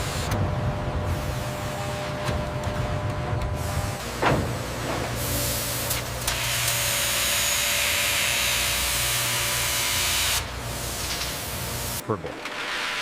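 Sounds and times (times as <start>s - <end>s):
low machine hum: 0.0s - 12.5s.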